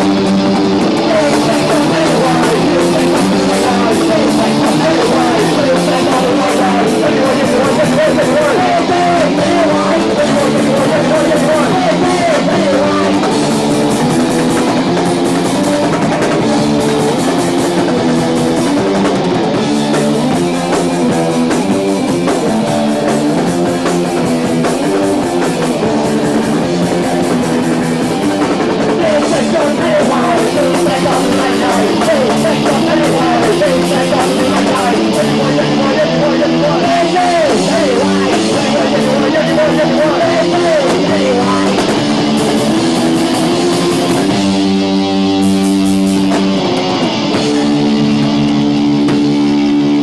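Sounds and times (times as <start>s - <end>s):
live rock band playing: 0.0s - 50.0s.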